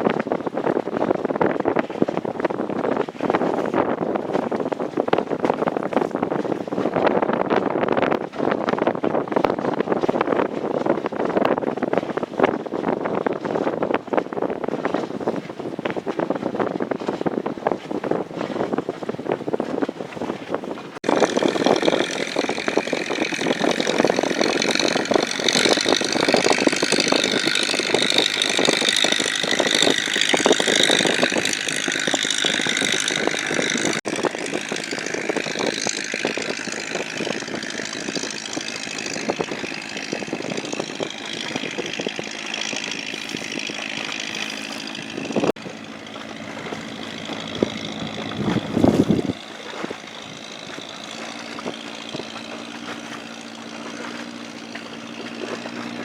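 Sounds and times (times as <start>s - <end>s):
boat engines chugging: 0.0s - 56.0s
high engine whine: 21.0s - 56.0s.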